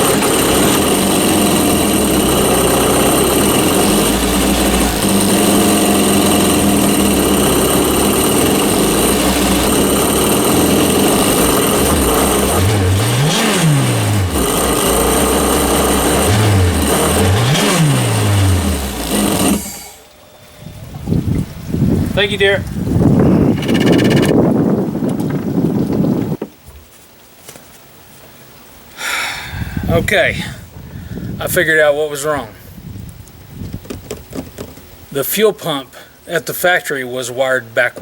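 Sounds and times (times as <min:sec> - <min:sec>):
jet ski engine running and revving: 0:00.0 - 0:20.0, 0:23.1 - 0:24.4.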